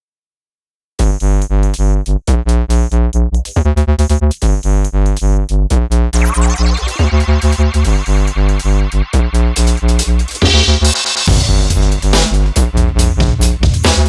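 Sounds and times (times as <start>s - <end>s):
pulsing synthesizer bass beat: 1.0s - 14.0s
loud electronic music: 6.2s - 14.0s.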